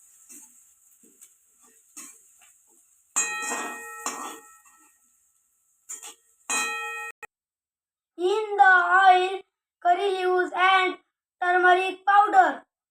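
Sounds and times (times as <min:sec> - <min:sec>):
loud pan clangs: 0:03.2 - 0:04.8, 0:05.9 - 0:07.2
metal spoon tapping pan: 0:03.2 - 0:05.0, 0:05.9 - 0:07.3.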